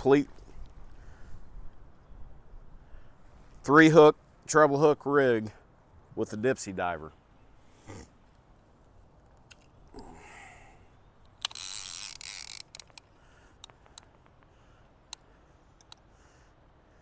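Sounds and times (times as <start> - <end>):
fishing tackle scraping: 11.2 - 14.4
hooks clicking together: 11.3 - 14.3.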